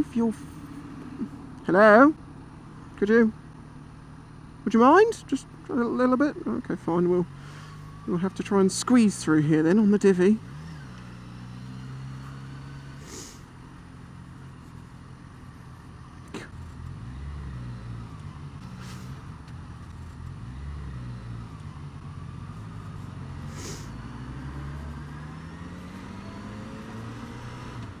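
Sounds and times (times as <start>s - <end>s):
motorcycle engine revving: 6.8s - 28.0s
short hisses: 12.9s - 13.5s, 18.6s - 19.2s, 23.4s - 24.0s.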